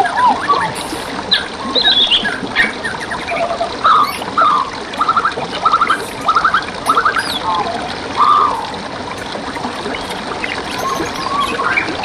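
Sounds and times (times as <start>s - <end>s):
songbirds singing: 0.0s - 12.0s
trickle of flowing water: 0.0s - 12.0s
bird trills: 0.5s - 12.0s.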